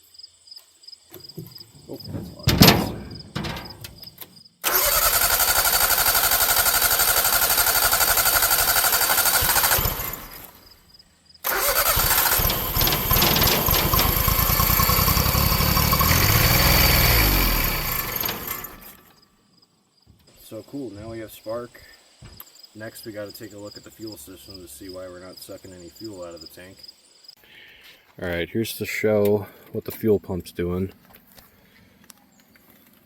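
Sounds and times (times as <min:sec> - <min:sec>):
engine starter cranking: 0:01.8 - 0:10.8, 0:11.4 - 0:19.1
engine firing briefly: 0:04.6 - 0:10.6, 0:11.4 - 0:19.0.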